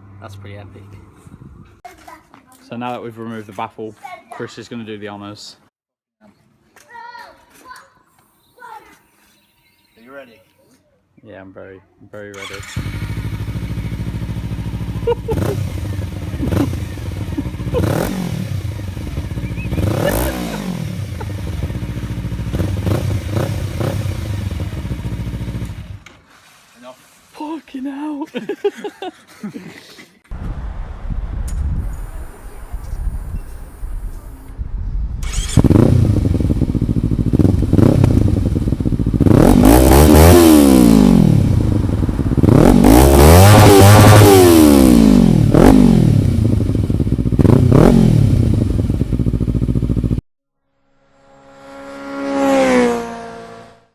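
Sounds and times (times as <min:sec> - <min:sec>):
motorcycle engine revving: 0:12.4 - 0:26.4, 0:35.2 - 0:50.2, 0:51.0 - 0:53.9
motorcycle engine idling: 0:12.7 - 0:26.0, 0:35.2 - 0:39.3, 0:48.3 - 0:50.2.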